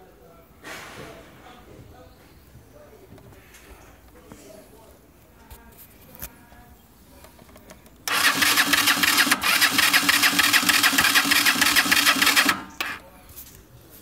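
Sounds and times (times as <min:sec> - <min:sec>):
motorcycle electric starter cranking: 0:08.0 - 0:13.0.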